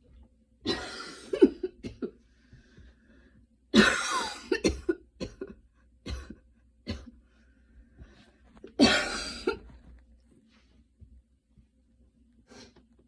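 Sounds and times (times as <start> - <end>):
woman coughing: 0.7 - 2.2, 3.8 - 7.2, 8.8 - 9.7.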